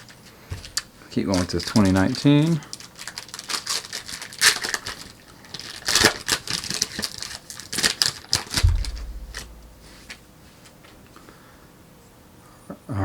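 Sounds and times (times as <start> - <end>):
low thump: 8.6 - 10.3.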